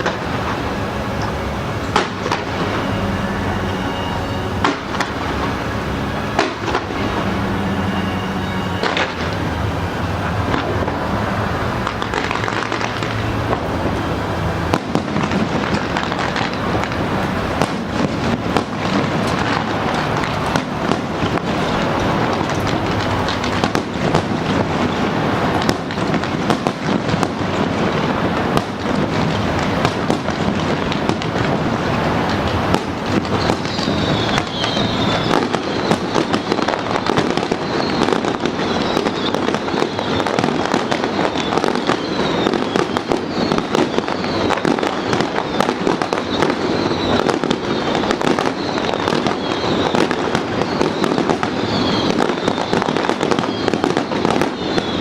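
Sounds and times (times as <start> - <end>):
high-pitched falling whistles: 0.0 - 10.4, 33.2 - 55.0
fireworks crackles and bangs: 0.0 - 55.0.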